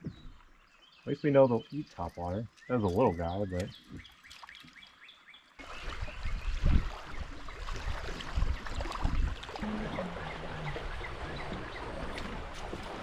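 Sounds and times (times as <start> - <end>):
wind buffeting microphone: 5.8 - 13.0
river water rushing: 7.7 - 13.0.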